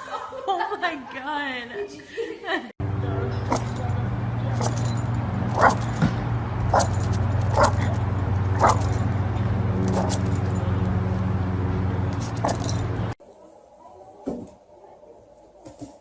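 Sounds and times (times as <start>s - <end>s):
dog yipping: 5.5s - 5.9s, 6.7s - 8.0s, 8.6s - 8.9s.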